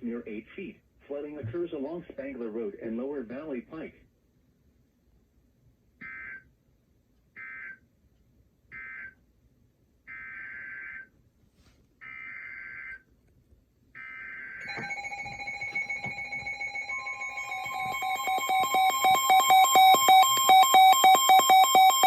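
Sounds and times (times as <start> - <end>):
pulsing electronic alert tone: 14.6 - 22.0
two-tone digital data screech: 14.7 - 22.0.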